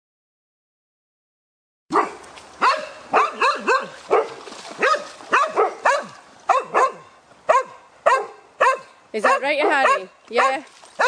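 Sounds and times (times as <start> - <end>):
dog barking: 1.9 - 10.6.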